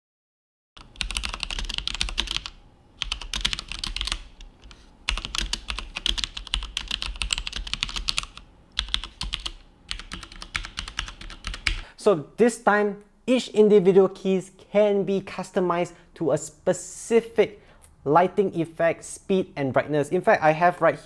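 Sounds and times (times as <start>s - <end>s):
typing on mechanical keyboard: 0.8s - 11.8s.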